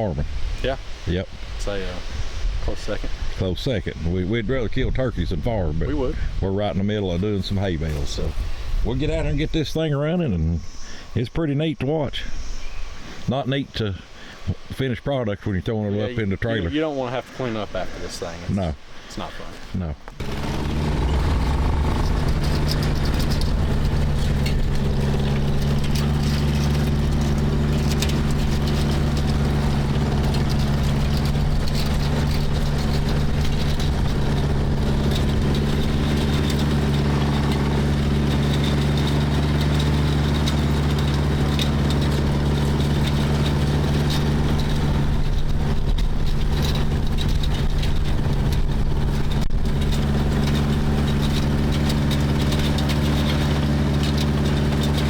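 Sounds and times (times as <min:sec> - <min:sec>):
tractor engine droning: 0:02.7 - 0:11.5, 0:20.1 - 0:55.0.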